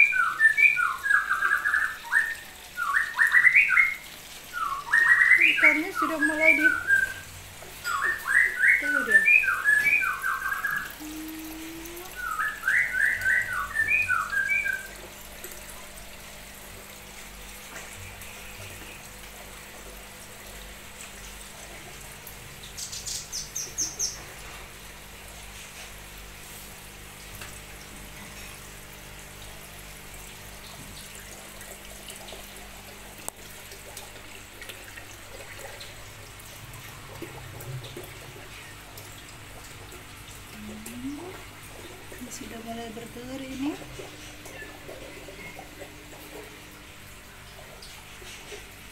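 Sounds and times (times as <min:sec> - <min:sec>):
birds chirping: 0:04.6 - 0:15.0.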